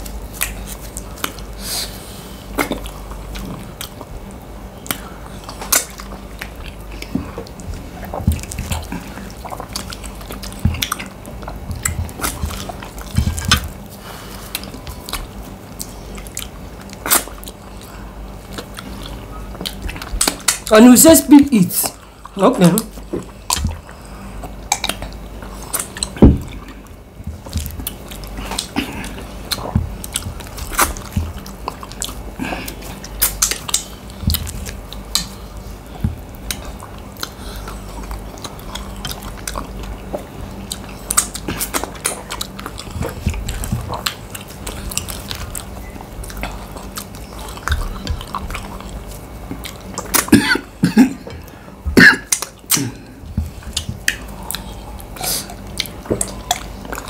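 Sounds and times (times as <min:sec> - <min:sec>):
people chewing and biting: 0:00.0 - 0:20.7, 0:21.8 - 0:57.0.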